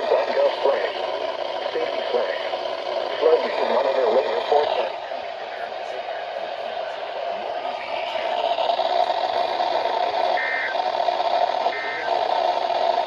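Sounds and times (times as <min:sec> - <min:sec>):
radio static hiss: 0:01.6 - 0:10.9, 0:11.6 - 0:12.5
warbling data bursts: 0:10.2 - 0:10.8, 0:11.6 - 0:12.3.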